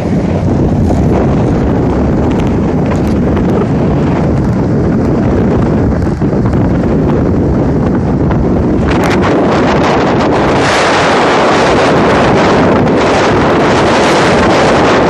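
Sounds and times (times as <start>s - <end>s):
ocean surf: 0.0s - 15.0s
wind buffeting microphone: 0.0s - 15.0s.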